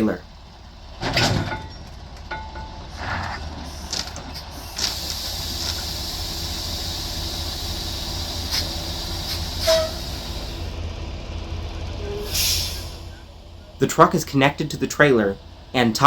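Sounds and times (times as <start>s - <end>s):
diesel truck engine running low: 0.0s - 16.0s
steady hiss: 4.7s - 10.7s.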